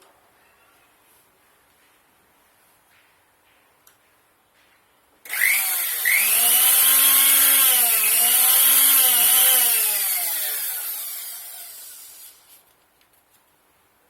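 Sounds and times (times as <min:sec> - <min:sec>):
electric blender running: 0:05.3 - 0:12.3.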